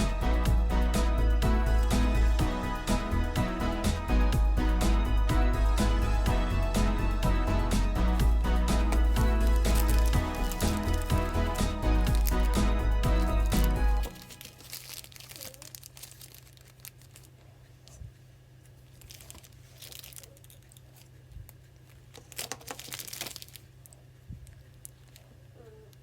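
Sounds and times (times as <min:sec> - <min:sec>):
music: 0:00.0 - 0:14.6
paper crinkling: 0:09.2 - 0:11.3, 0:12.1 - 0:18.0, 0:18.7 - 0:25.3.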